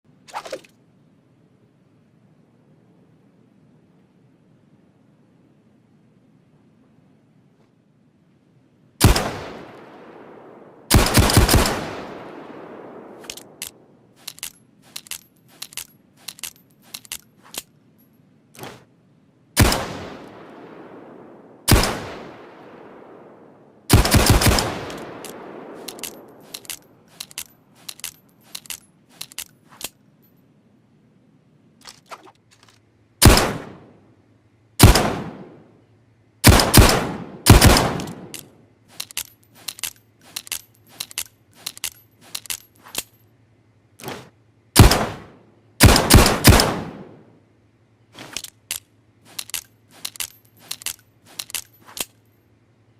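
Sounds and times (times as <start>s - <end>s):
revolver gunshots: 9.0s - 14.0s, 19.6s - 27.0s, 33.2s - 34.0s, 34.8s - 35.6s, 36.4s - 38.4s, 44.0s - 47.3s
metallic clicks of revolver handling: 13.2s - 18.2s, 24.1s - 30.4s, 38.0s - 43.3s, 48.2s - 52.4s.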